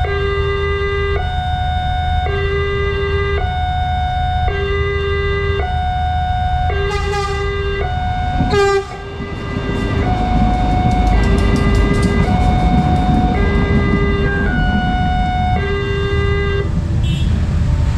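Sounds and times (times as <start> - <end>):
two-tone crossing warning siren: 0.0 - 17.2
train rumble: 6.0 - 17.9
train horn: 6.7 - 17.3
wheels clicking over rail joints: 8.3 - 16.8.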